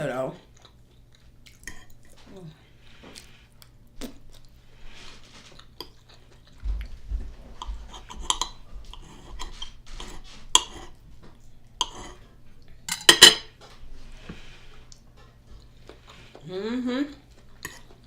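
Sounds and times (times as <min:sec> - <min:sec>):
cutlery clinking on a plate: 0:12.9 - 0:13.6.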